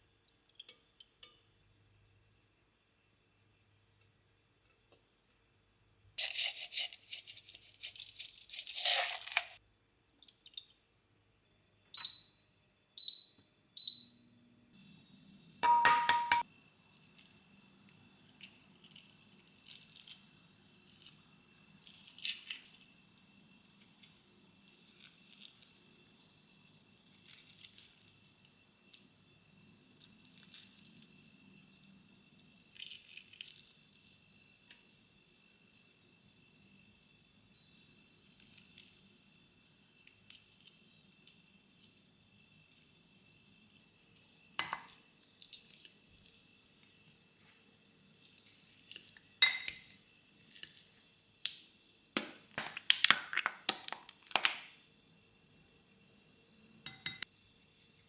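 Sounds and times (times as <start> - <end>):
packaging rustling and tearing: 6.2 - 9.6.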